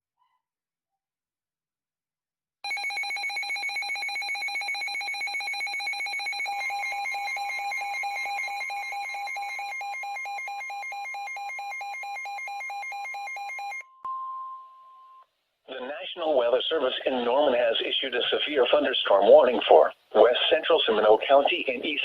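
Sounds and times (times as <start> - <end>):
steady warning alarm tone: 2.6 - 13.8.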